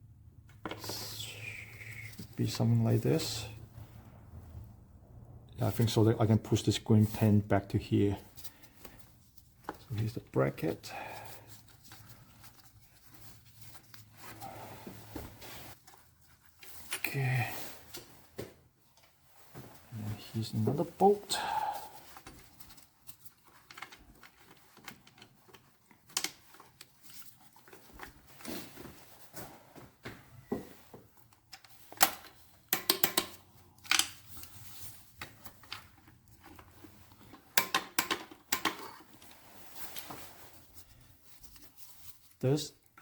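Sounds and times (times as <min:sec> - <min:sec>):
hand tools clicking and tapping: 0:31.5 - 0:34.2, 0:37.5 - 0:39.0.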